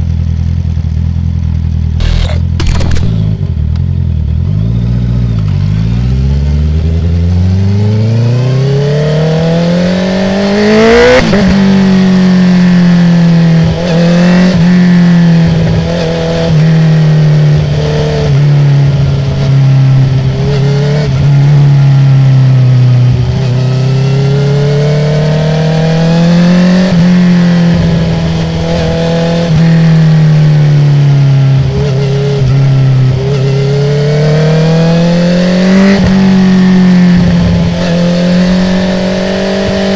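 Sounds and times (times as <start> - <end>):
quickshifter upshift: 2.0 - 3.6.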